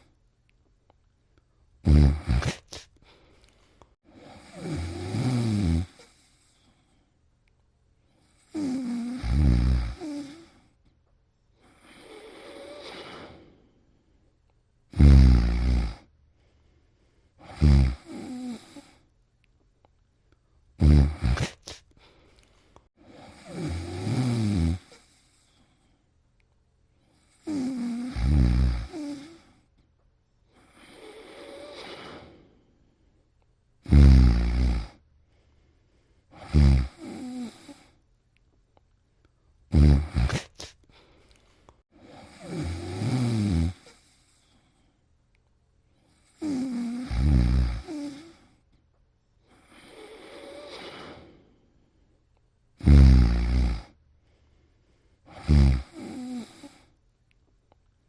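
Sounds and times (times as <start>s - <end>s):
person snoring: 1.8s - 2.9s, 4.1s - 6.6s, 8.3s - 10.8s, 11.6s - 13.7s, 14.9s - 16.1s, 17.4s - 19.0s, 20.8s - 21.8s, 23.0s - 25.5s, 27.2s - 29.7s, 30.5s - 32.7s, 33.8s - 35.0s, 36.3s - 38.0s, 39.7s - 40.8s, 42.0s - 44.4s, 46.1s - 48.6s, 49.5s - 51.6s, 52.8s - 54.0s, 55.3s - 56.9s.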